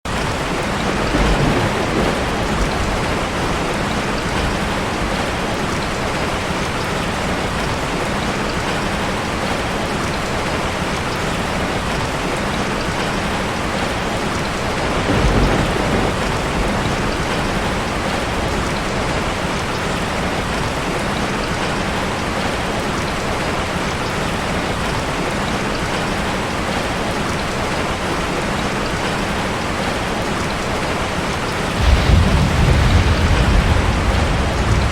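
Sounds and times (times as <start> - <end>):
steady heavy rain: 0.0 - 34.9
thunder rumbling: 0.1 - 6.3, 13.7 - 20.0, 31.7 - 34.9.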